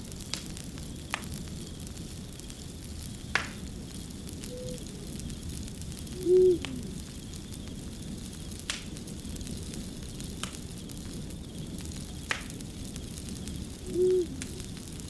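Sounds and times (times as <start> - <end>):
fire crackling and popping: 0.0 - 15.0
owl hooting: 4.4 - 5.3, 6.0 - 7.1, 13.7 - 14.7.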